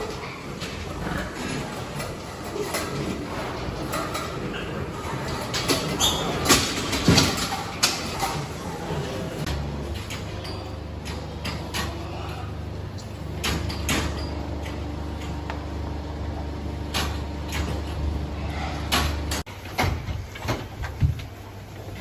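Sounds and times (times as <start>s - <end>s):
knocks and clatters: 0.0s - 8.6s
low machine hum: 0.0s - 19.6s.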